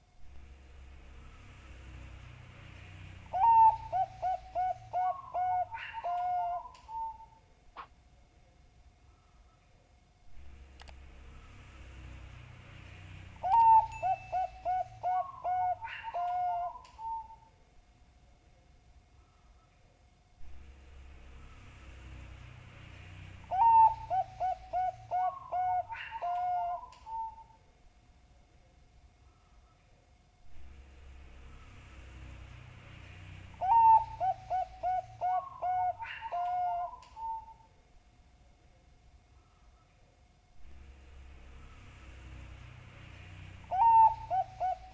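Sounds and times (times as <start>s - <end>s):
dove cooing: 3.3s - 7.3s, 13.4s - 17.5s, 23.4s - 27.6s, 33.6s - 37.6s, 43.6s - 44.9s
second higher dove coo: 3.4s - 7.2s, 13.4s - 17.4s, 23.5s - 27.5s, 33.6s - 37.6s.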